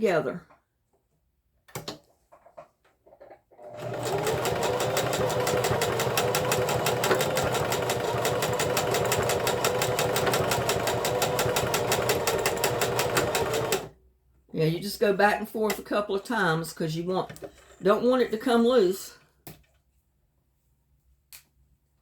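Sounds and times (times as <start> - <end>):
sewing machine stitching: 3.5 - 13.9.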